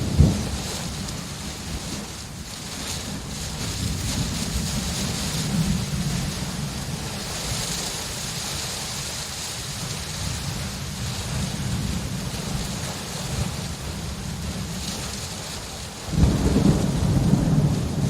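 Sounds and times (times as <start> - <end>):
low thunder rumbling: 0.0 - 8.6, 9.7 - 18.0
steady rain falling: 0.0 - 18.0.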